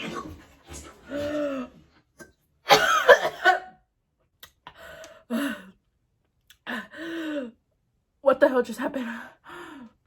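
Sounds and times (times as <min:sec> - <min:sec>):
woman coughing and choking: 0:02.7 - 0:03.8.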